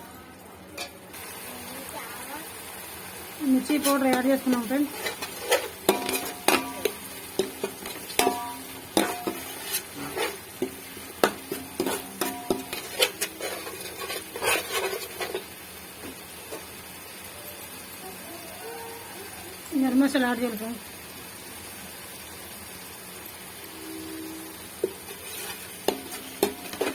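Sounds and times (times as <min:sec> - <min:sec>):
food sizzling: 0:00.0 - 0:26.9
spoon knocking against pot: 0:04.1 - 0:09.8, 0:10.6 - 0:13.3, 0:25.8 - 0:26.9.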